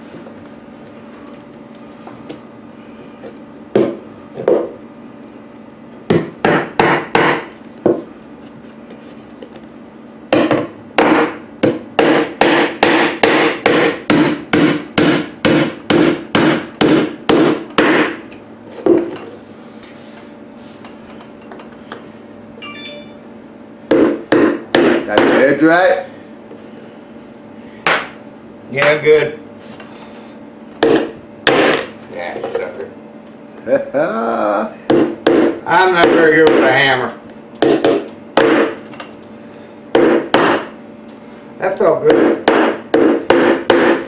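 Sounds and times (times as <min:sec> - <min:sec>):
hammer striking nails into wood: 0:06.1 - 0:07.5, 0:10.3 - 0:18.2, 0:23.9 - 0:25.4, 0:30.8 - 0:31.9, 0:34.9 - 0:36.7, 0:37.6 - 0:38.8, 0:40.0 - 0:40.7, 0:42.1 - 0:44.0.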